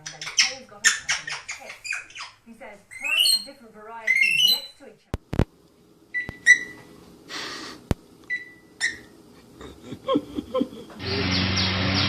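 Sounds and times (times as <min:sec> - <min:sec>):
cockatiel whistled chirps: 0:06.2 - 0:06.8.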